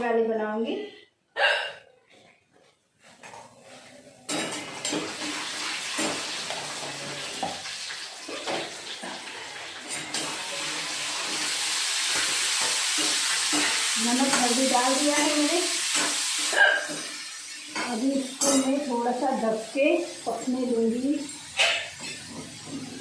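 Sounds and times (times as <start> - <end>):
food sizzling in hot oil: 4.4 - 23.0
spoon scraping a pan: 8.3 - 19.0, 20.1 - 23.0.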